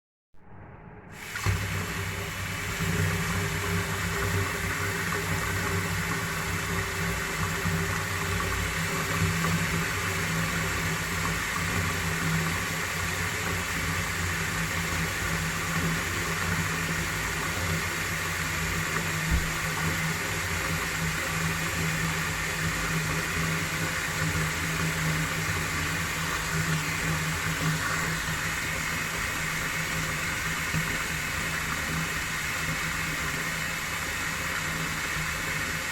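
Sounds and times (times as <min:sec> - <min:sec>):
low hum: 0:00.4 - 0:04.2
water draining down plughole: 0:01.1 - 0:35.9.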